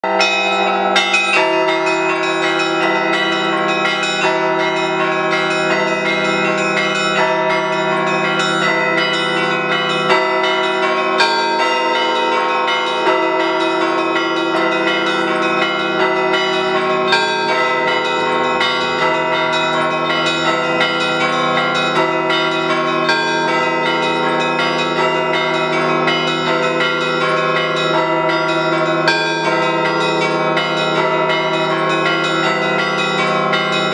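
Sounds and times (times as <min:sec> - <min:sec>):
church bells ringing: 0:00.0 - 0:33.9.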